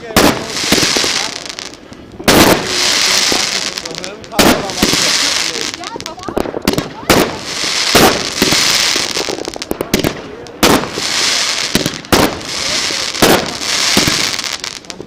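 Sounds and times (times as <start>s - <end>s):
fireworks bangs: 0.0s - 15.0s
fireworks crackling hiss: 0.0s - 15.0s.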